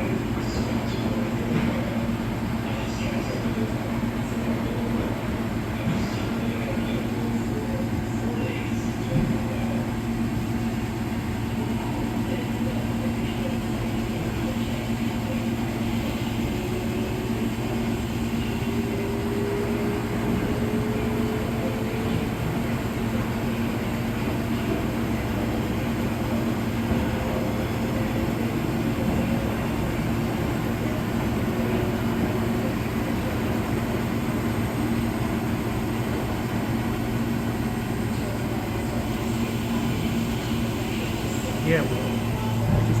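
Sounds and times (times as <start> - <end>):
washing machines spinning: 0.0 - 43.0.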